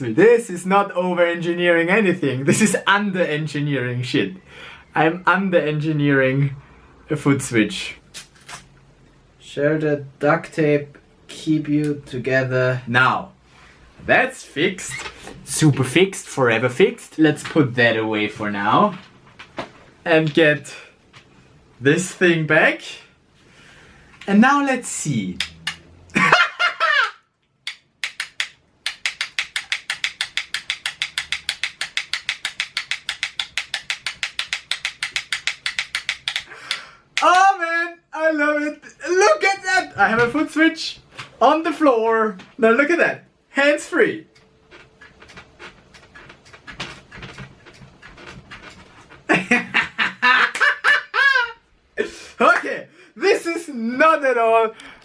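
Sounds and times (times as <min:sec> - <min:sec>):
sharp mechanical clicks: 0:25.4 - 0:25.9, 0:27.6 - 0:37.3
man cackling cries: 0:26.2 - 0:27.3, 0:49.7 - 0:51.6.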